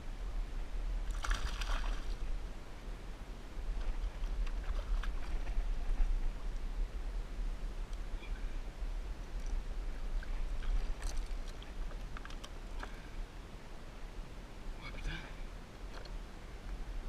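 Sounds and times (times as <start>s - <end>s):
water sounds: 1.0s - 2.4s
splash-like rush: 1.1s - 2.2s.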